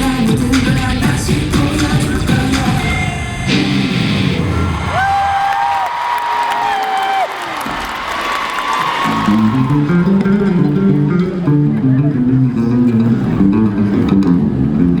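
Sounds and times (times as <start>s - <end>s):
live band music over sound system: 0.0s - 4.4s
bass and guitar line: 0.0s - 5.2s, 9.1s - 15.0s.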